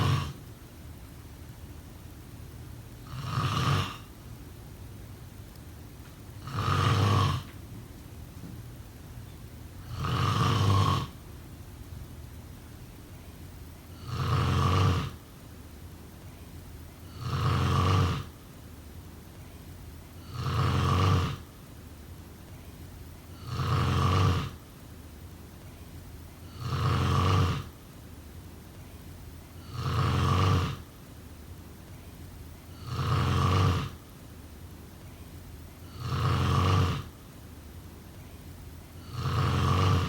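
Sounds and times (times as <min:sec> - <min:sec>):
person snoring: 0:00.0 - 0:00.4, 0:03.0 - 0:04.1, 0:06.4 - 0:07.6, 0:09.8 - 0:11.2, 0:13.9 - 0:15.2, 0:17.1 - 0:18.3, 0:20.2 - 0:21.4, 0:23.3 - 0:24.6, 0:26.4 - 0:27.7, 0:29.6 - 0:30.8, 0:32.7 - 0:34.0, 0:35.8 - 0:37.1, 0:39.0 - 0:40.0
faint steady hiss: 0:00.0 - 0:40.0.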